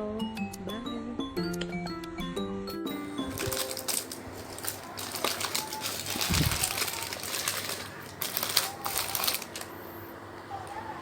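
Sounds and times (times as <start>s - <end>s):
crinkling handling noises: 3.0s - 11.0s.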